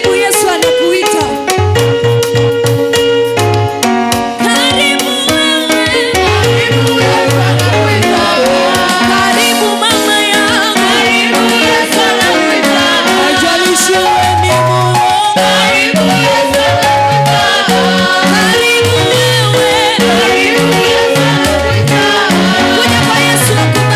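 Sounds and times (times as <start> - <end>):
gospel band music: 0.0 - 23.9
bass line: 1.5 - 4.1, 6.2 - 9.6, 12.2 - 23.9
sustained chords: 10.8 - 23.9.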